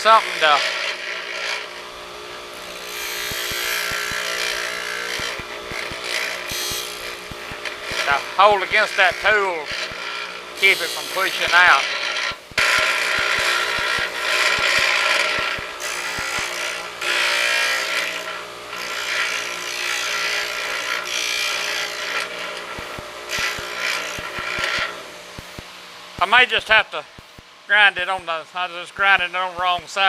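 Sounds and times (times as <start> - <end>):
grinder motor hum: 0.0 - 28.3
grinder wheel rasping on steel: 2.5 - 25.6.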